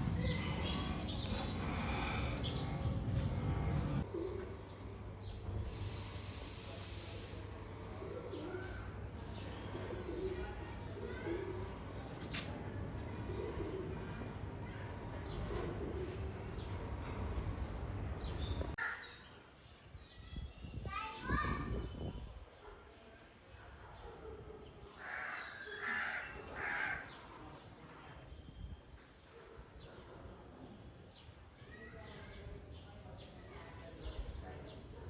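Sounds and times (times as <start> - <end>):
pigeons cooing: 0.1 - 4.8, 7.8 - 12.1, 13.0 - 17.0
brief high hiss: 5.6 - 7.6.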